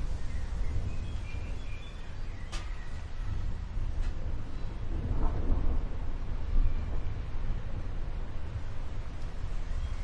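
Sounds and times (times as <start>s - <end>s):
distant thunder rumble: 3.4s - 10.0s.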